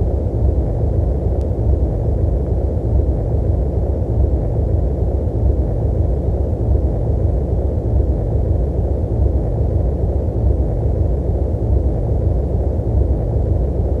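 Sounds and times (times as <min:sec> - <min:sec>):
steady low rumbling noise: 0:00.0 - 0:14.0.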